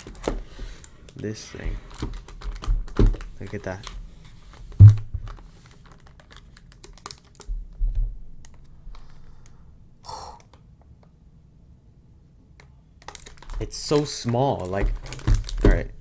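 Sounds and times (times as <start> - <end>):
soft knocks: 4.6 - 5.5
heavy thump: 4.7 - 5.4, 14.8 - 16.0.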